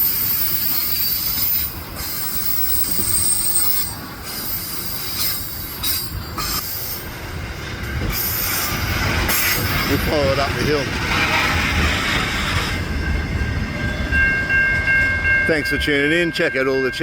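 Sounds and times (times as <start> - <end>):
high-pitched wheel squeal: 0.0 - 7.1
wagons rumbling on rails: 0.0 - 17.0.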